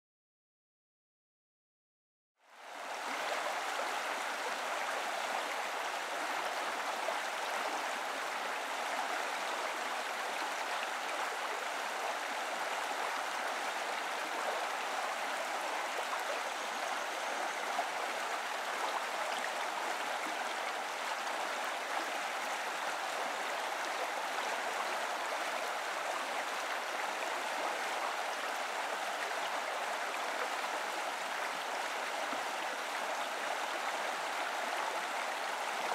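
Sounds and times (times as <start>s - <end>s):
river water flowing over stones: 2.5s - 35.9s.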